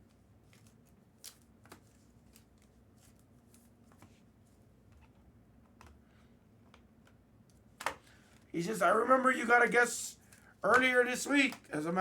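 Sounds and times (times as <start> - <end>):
trading cards clicking and rustling: 10.3 - 11.7.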